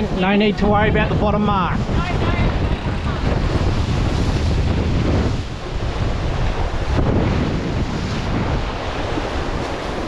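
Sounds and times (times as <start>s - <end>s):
water rushing past hulls: 0.0s - 10.0s
wind buffeting microphone: 0.0s - 10.0s.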